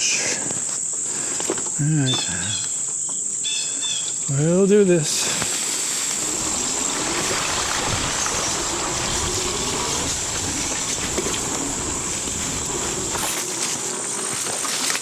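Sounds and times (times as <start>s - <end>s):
high insect drone: 0.0s - 15.0s
bike tyres rumbling on rough ground: 5.2s - 15.0s
wind buffeting microphone: 6.1s - 14.0s.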